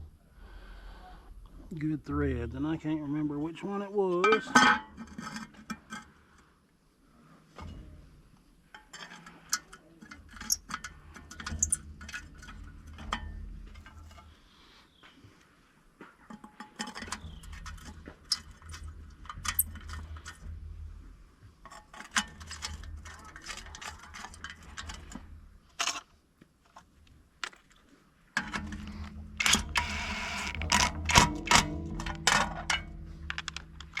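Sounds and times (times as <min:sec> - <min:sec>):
low hum: 0:29.1 - 0:34.0.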